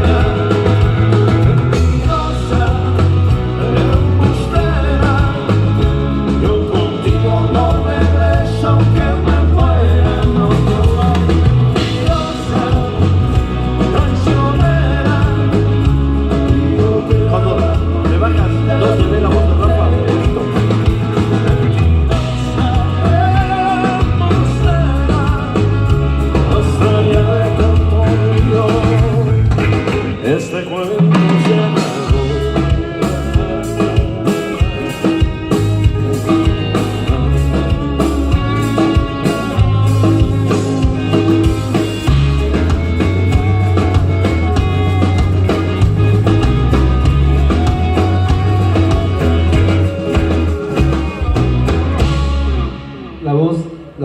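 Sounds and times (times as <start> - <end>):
bass line: 0.0 - 54.0
drums: 0.0 - 54.0
guitar: 0.0 - 54.0.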